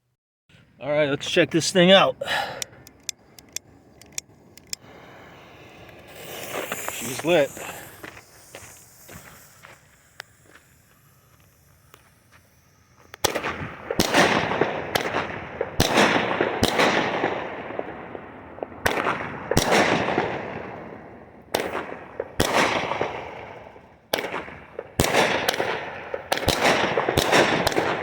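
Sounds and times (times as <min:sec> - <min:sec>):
firework launches and bursts: 0:04.3 - 0:28.0
rush of glitter noise: 0:04.8 - 0:13.9.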